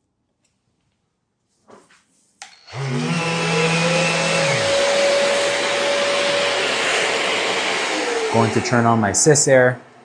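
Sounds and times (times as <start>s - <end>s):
sander and dust extractor whirring: 2.4s - 10.0s.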